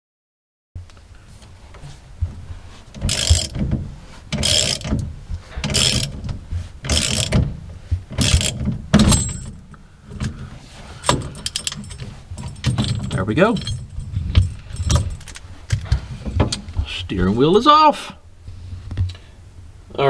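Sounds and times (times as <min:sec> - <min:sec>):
ratchet wrench clicking: 0:03.1 - 0:03.6, 0:04.4 - 0:05.0, 0:05.6 - 0:06.1, 0:06.9 - 0:07.3, 0:08.2 - 0:08.6.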